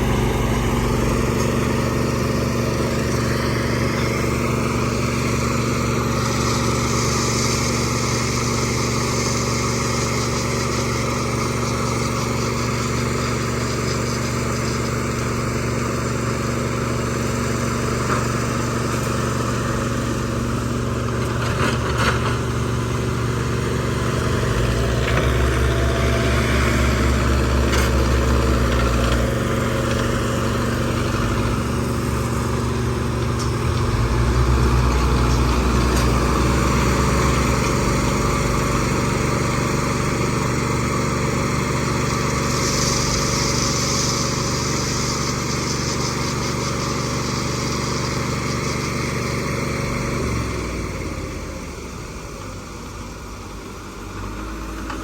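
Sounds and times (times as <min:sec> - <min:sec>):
backhoe loader engine: 0:00.0 - 0:55.0
concrete mixer plant running: 0:00.0 - 0:55.0
deep low hum: 0:24.0 - 0:39.6
sharp clatter: 0:27.2 - 0:49.9.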